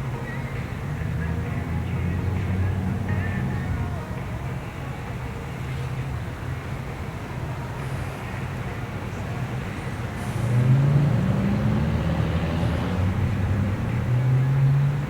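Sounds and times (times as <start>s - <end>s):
road traffic passing: 0.0s - 15.0s
vehicle engine accelerating: 9.6s - 15.0s.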